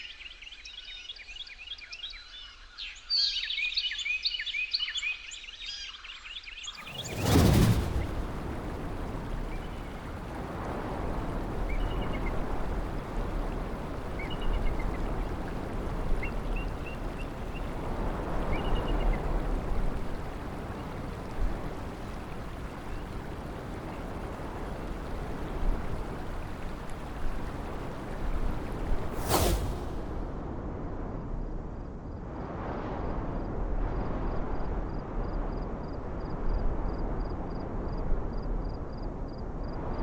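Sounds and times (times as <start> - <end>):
loud burst: 6.8 - 10.8, 29.0 - 30.4
flowing water rushing: 6.8 - 30.3.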